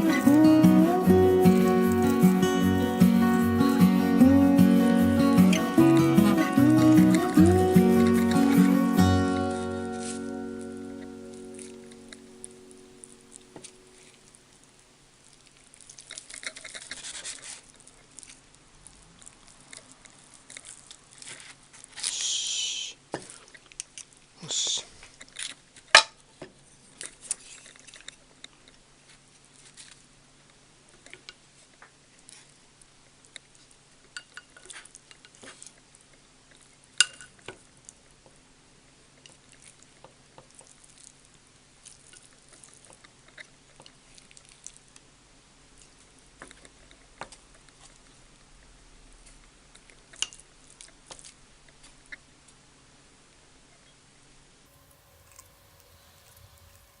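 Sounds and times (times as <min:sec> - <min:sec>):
faint steady hum: 0:52.4 - 0:57.0.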